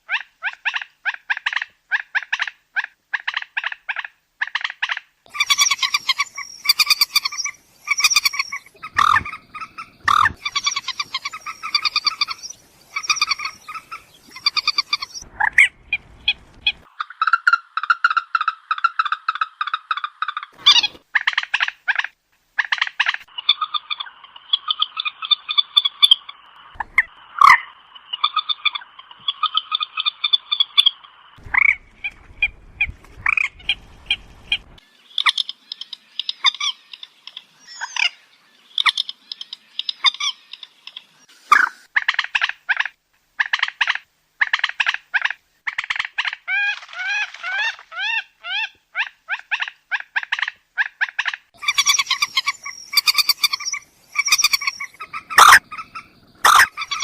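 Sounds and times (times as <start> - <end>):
moorhen calls: 3.2 - 21.0, 50.8 - 57.0.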